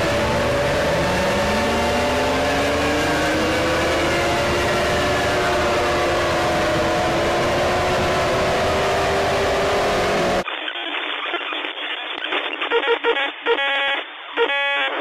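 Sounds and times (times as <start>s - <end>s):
alarm drone: 0.0s - 10.4s.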